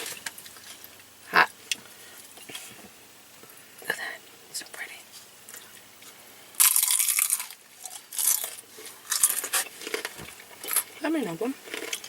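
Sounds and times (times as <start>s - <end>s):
crunchy food being chewed: 5.5s - 12.0s.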